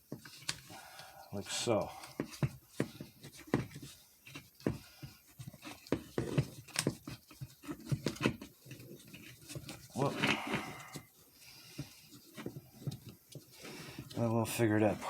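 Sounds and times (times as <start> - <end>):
plastic parts clicking and knocking: 0.0 - 0.7, 2.0 - 11.1
parts rubbing: 0.1 - 15.0.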